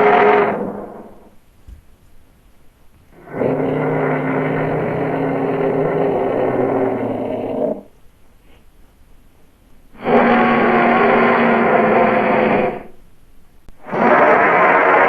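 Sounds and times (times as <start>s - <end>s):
dinosaur roar: 0.0s - 1.4s, 3.1s - 7.9s, 10.0s - 13.0s, 13.8s - 15.0s.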